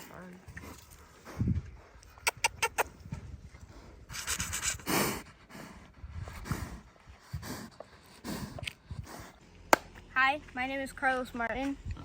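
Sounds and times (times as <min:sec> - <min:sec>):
pig breathy grunts: 0:04.7 - 0:09.4.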